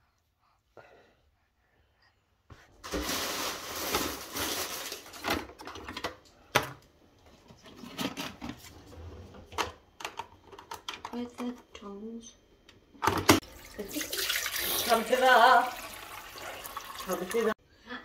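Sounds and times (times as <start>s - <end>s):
kitchen objects clattering: 2.8s - 6.8s, 7.4s - 11.6s.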